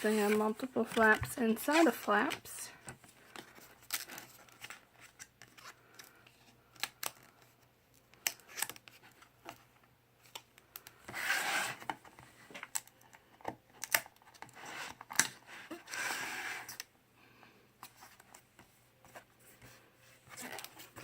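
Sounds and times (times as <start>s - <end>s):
book pages and flaps turning: 0.0s - 16.9s, 17.8s - 21.0s.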